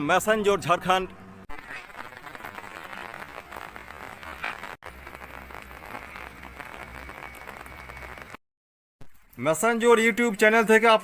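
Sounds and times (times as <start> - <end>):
rain pattering: 1.5 - 8.4.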